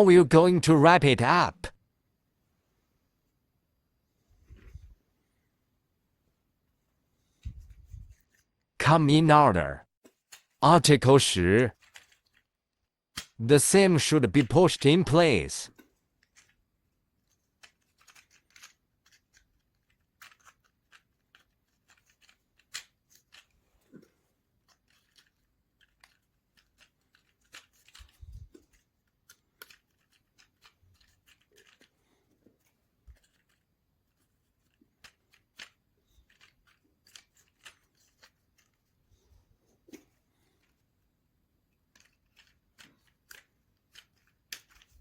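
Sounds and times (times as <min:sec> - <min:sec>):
small wooden parts clicking: 0:17.2 - 0:23.6, 0:24.5 - 0:38.9, 0:41.7 - 0:45.0.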